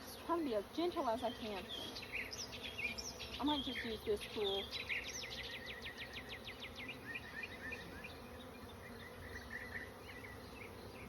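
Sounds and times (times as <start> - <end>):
bees buzzing: 0.0 - 11.0.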